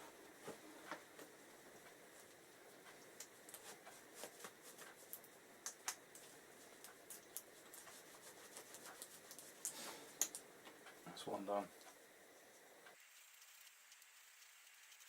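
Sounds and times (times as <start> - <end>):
faint scattered ticks: 0.5 - 15.0.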